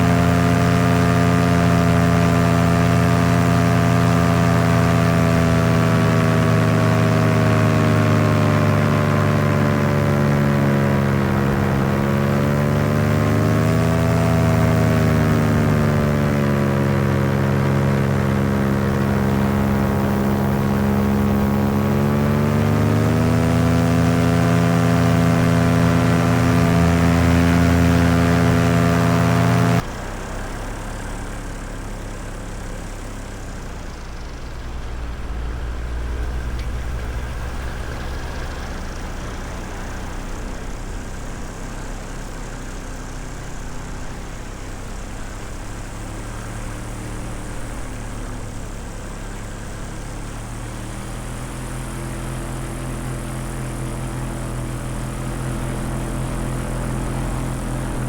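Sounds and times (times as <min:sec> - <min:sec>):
paramotor engine drone: 0:00.0 - 0:58.0.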